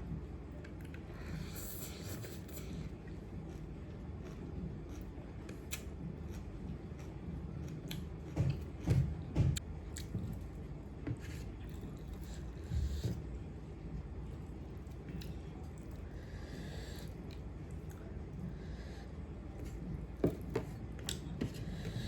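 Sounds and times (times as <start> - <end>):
person chewing food: 1.7 - 10.4, 19.6 - 22.0.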